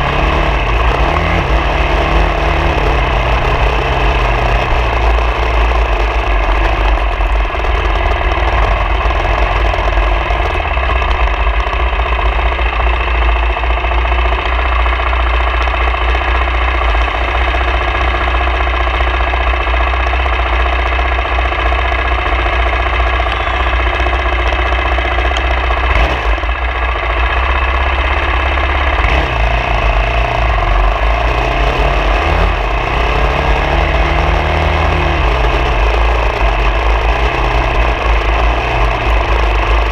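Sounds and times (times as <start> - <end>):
off-road vehicle engine running: 0.0 - 39.9.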